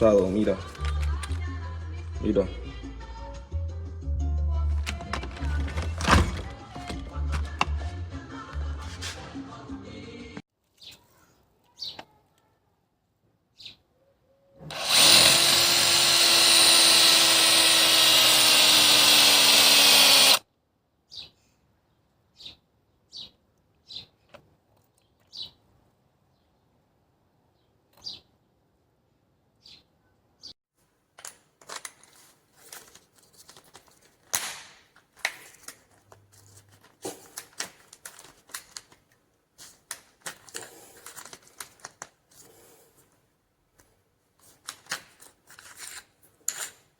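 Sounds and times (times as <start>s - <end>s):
rustling: 4.8s - 7.7s, 8.6s - 9.4s, 30.8s - 46.9s
hammer drill running: 14.7s - 20.4s.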